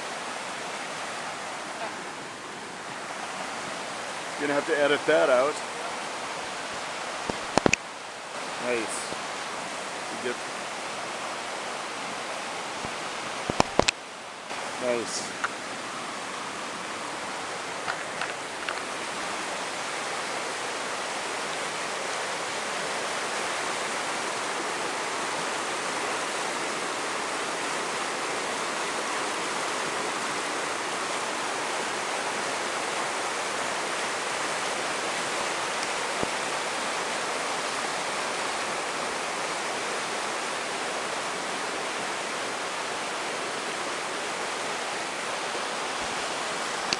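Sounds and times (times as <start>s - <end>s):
water rushing over rocks: 0.0s - 46.9s
small clicks: 7.3s - 7.8s, 13.5s - 14.0s, 17.8s - 18.9s.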